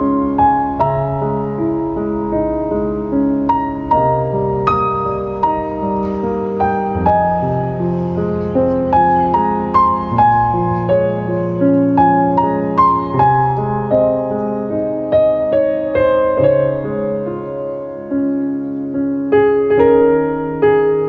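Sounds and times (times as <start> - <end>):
slow piano music: 0.0 - 21.0.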